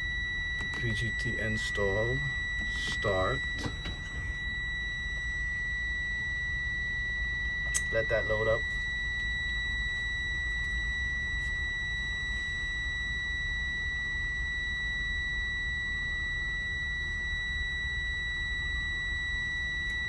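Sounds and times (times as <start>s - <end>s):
electronic warning buzzer tone: 0.0s - 20.0s
low steady rumble: 0.0s - 20.0s.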